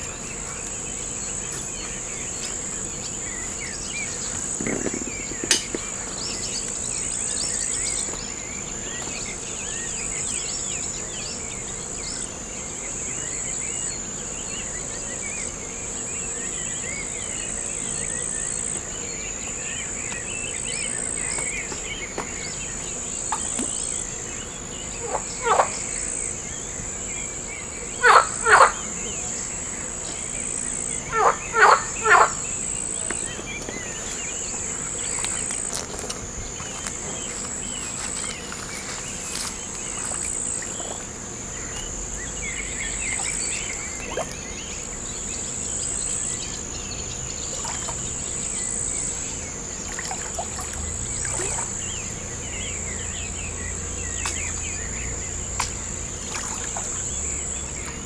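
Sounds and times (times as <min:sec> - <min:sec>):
insects shrilling: 0:30.5 - 0:58.0.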